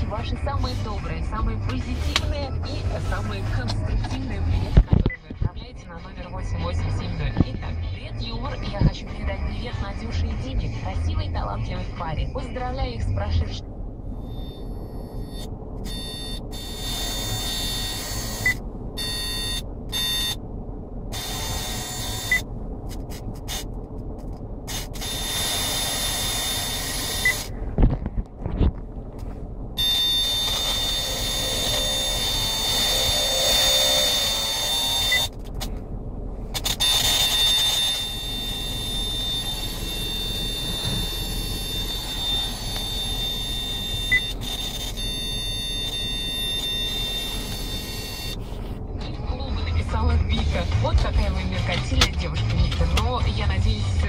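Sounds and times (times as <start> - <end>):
low cabin hum: 0.0 - 54.0
high-pitched speaker whistle: 36.7 - 48.4.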